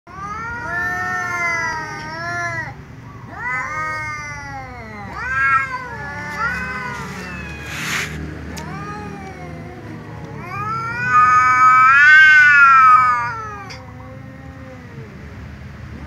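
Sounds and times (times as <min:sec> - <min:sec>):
cats meowing loudly: 0:00.1 - 0:15.2
cat hissing: 0:05.1 - 0:09.6.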